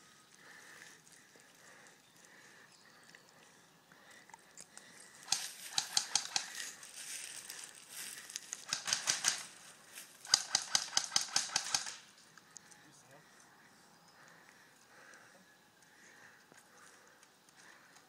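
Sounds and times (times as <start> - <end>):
airsoft guns firing bursts: 5.3 - 6.6, 8.6 - 9.6, 10.2 - 12.1.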